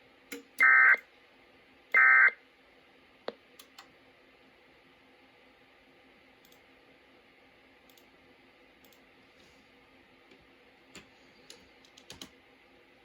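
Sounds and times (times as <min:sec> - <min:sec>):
faint hiss and hum: 0:00.0 - 0:13.0.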